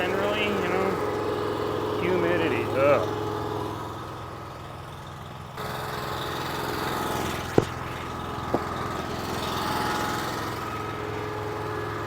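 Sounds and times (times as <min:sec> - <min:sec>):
log splitter engine running: 0:00.0 - 0:12.0
sharp knocks: 0:07.4 - 0:09.0.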